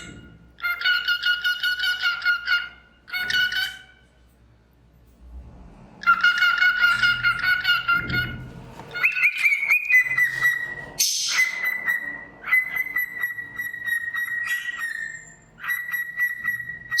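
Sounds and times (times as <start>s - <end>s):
cockatiel whistling: 6.0s - 17.0s.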